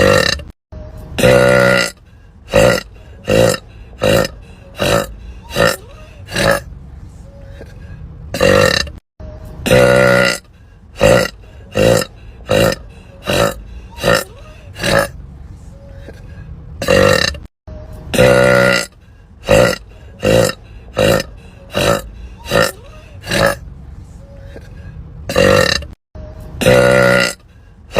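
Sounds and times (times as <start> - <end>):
woman burping: 0.0 - 0.5, 1.2 - 6.6, 8.4 - 9.0, 9.6 - 10.4, 11.0 - 15.1, 16.8 - 17.5, 18.1 - 18.9, 19.5 - 23.6, 25.3 - 26.0, 26.6 - 27.4.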